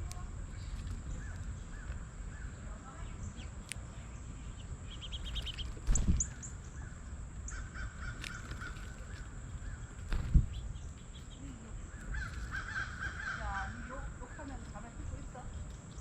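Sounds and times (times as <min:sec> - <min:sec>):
small birds calling and chirping: 0:00.0 - 0:16.0
low thumps: 0:10.0 - 0:10.6.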